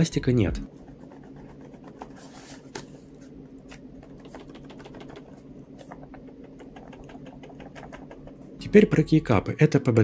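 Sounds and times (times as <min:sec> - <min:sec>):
low steady background hum: 0:00.0 - 0:10.0
mechanical keyboard clicks: 0:04.2 - 0:05.3, 0:05.9 - 0:08.4.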